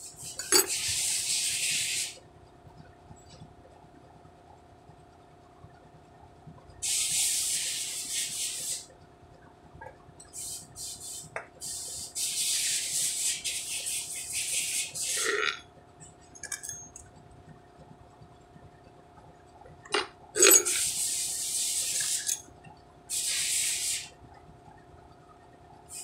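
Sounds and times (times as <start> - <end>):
faint steady hum: 0.0 - 26.0
hissing bursts: 6.8 - 8.8, 20.4 - 22.4, 23.1 - 24.1.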